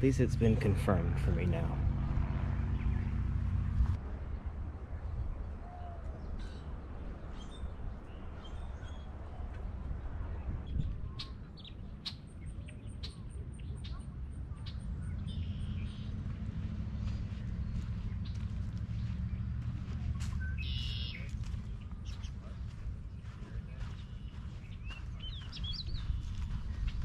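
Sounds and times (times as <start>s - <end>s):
steady low rumble: 0.0s - 27.0s
birds chirping and calling: 10.8s - 16.4s, 19.7s - 27.0s.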